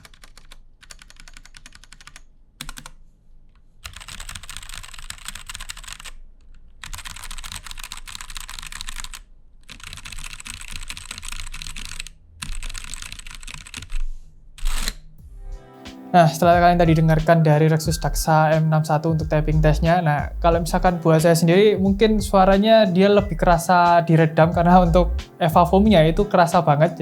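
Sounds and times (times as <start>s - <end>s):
damped mechanical keyboard typing: 0.0s - 3.0s, 3.8s - 6.2s, 6.8s - 14.0s, 14.6s - 15.0s.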